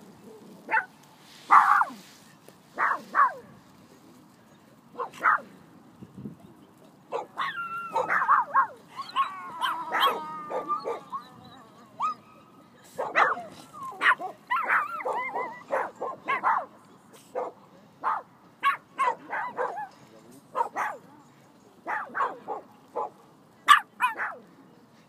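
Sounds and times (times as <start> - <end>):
small dog barking: 0.7 - 0.9, 1.5 - 2.0, 2.8 - 3.4, 5.0 - 5.4, 7.1 - 11.1, 13.0 - 16.7, 17.4 - 19.9, 20.5 - 21.0, 21.8 - 23.1, 23.7 - 24.4.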